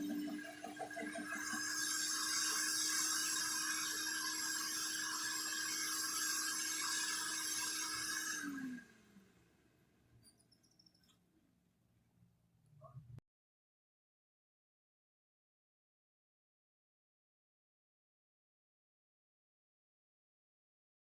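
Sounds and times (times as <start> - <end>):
electric wood chipper motor hum: 0.0 - 9.2.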